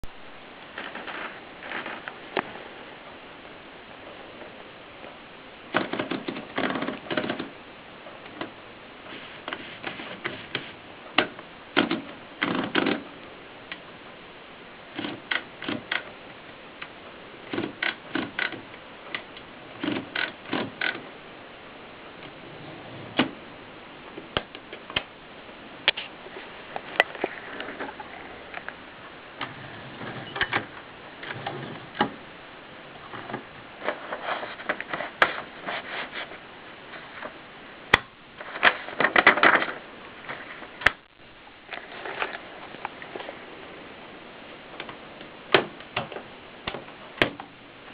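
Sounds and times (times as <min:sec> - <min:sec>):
typewriter clicking and clattering: 0:05.8 - 0:07.5.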